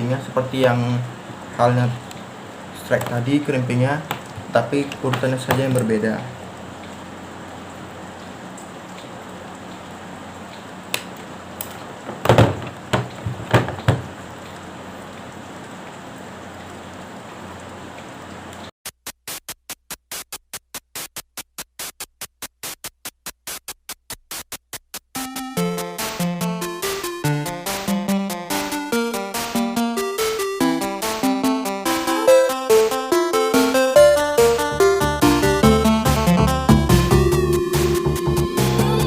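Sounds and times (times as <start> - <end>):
steady hiss: 0.0 - 12.1
electronic music with pulsing beat: 19.2 - 39.0.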